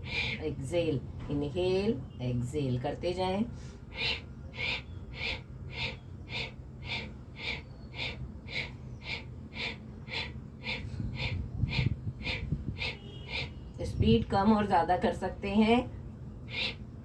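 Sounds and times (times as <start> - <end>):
woman breathing forcefully: 0.0 - 0.4, 3.5 - 13.7, 16.5 - 17.0.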